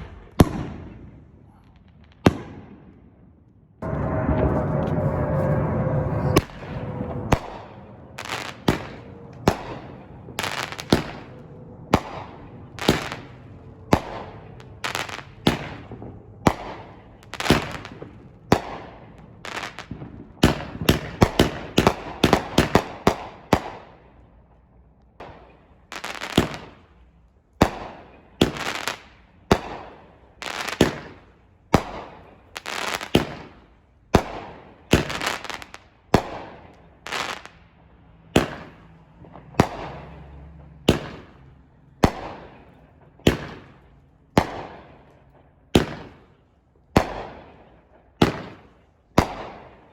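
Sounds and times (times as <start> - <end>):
fireworks shells bursting: 6.2 - 16.2.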